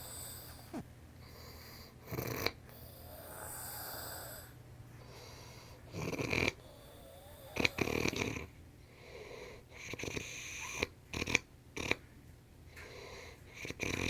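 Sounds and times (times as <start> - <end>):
harsh rasping snores: 0.0 - 0.8, 2.1 - 4.5, 6.0 - 8.5
wheezy breath with whistle: 0.0 - 0.8.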